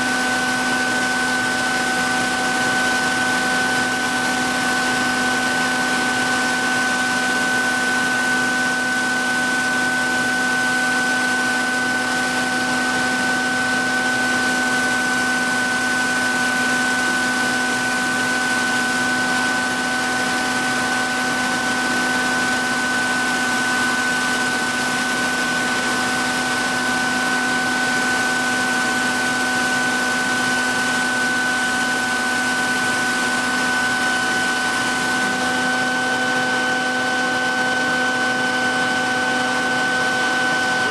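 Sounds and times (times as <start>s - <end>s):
sharpening machine motor humming: 19.8s - 40.9s.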